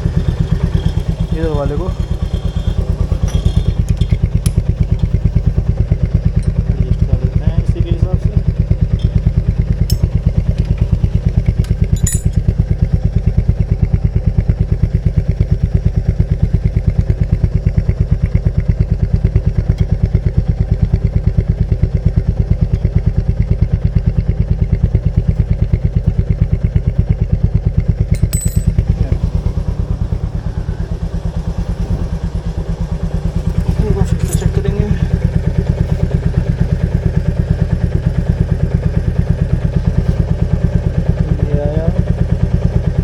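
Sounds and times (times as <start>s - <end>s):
motorcycle engine idling: 0.0s - 43.0s.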